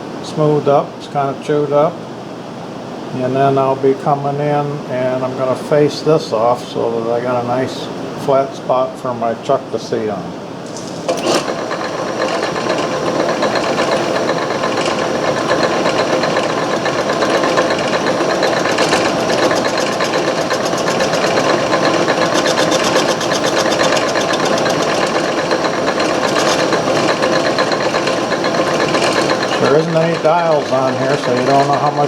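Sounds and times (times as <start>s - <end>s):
metal lathe rhythmic clatter: 10.6s - 32.0s.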